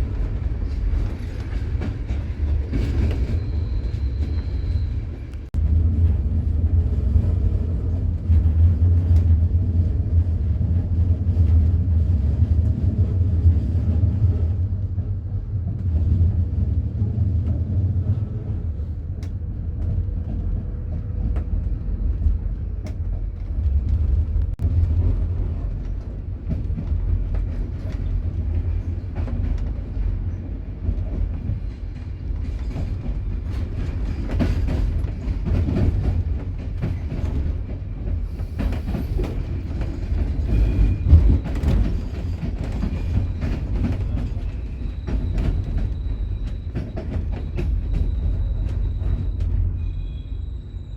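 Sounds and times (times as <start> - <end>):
train rumbling on track: 0.0 - 50.9.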